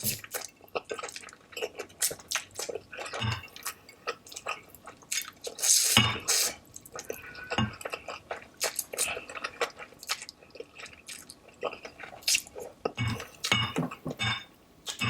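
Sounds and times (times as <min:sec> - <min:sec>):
wet chewing smacks: 0:00.2 - 0:12.7
noodle slurping: 0:04.8 - 0:07.4.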